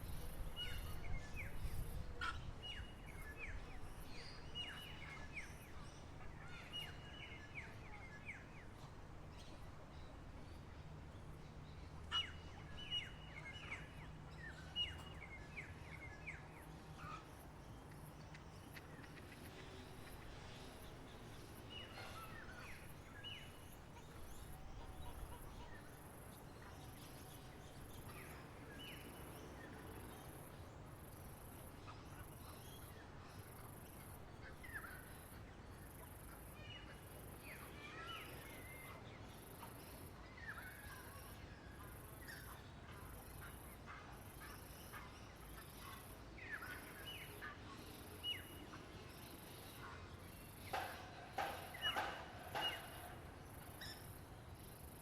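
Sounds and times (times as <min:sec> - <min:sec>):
birds chirping: 0:17.0 - 0:30.4.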